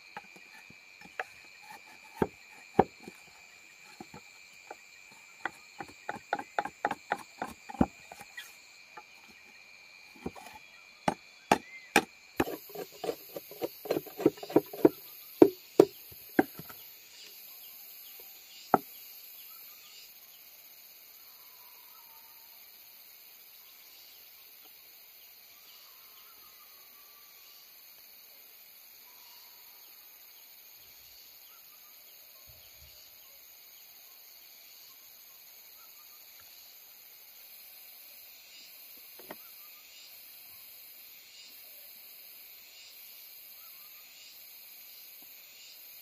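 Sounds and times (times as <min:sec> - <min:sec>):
hand tool striking wood: 0:00.2 - 0:09.4, 0:10.2 - 0:16.8.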